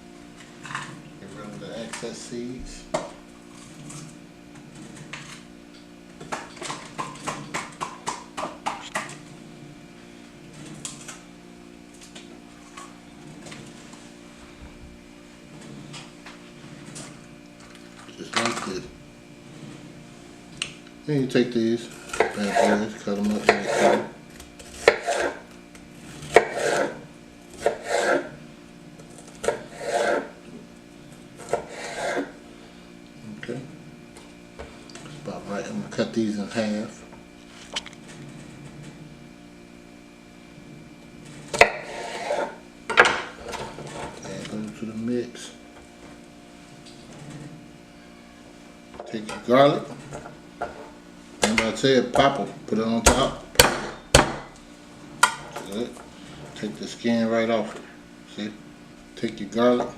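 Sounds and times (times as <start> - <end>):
steady low hum: 0.0 - 59.9
knife scraping slide: 22.2 - 24.1, 24.8 - 25.4, 26.2 - 27.0, 27.6 - 28.3, 29.5 - 30.4, 31.5 - 32.4, 41.6 - 42.6.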